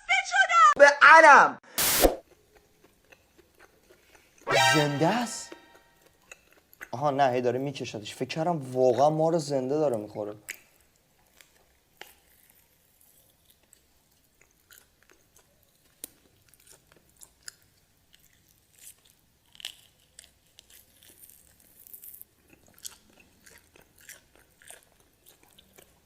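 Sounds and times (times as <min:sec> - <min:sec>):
crunchy chewing: 0:02.2 - 0:04.4, 0:10.4 - 0:26.0.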